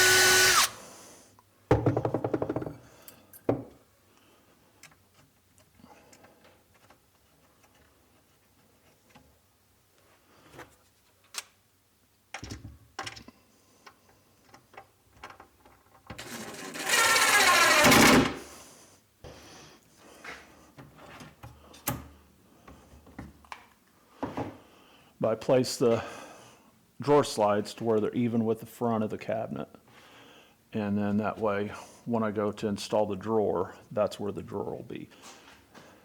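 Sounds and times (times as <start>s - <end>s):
power drill driving screws: 0.0s - 0.8s, 16.2s - 18.5s
small clicks and handling noises: 4.8s - 9.3s.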